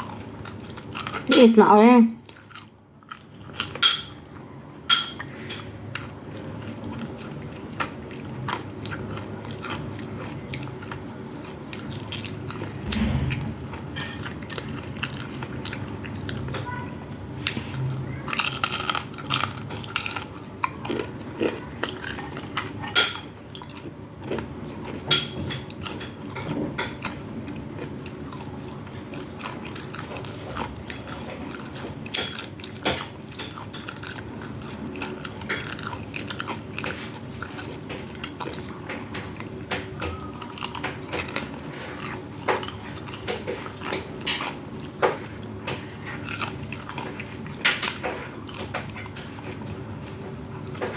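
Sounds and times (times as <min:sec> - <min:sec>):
crunchy chewing: 0:00.0 - 0:01.3, 0:02.2 - 0:04.5, 0:05.2 - 0:13.2, 0:17.4 - 0:50.9
cutlery clinking on plate: 0:03.7 - 0:04.2, 0:04.9 - 0:05.7.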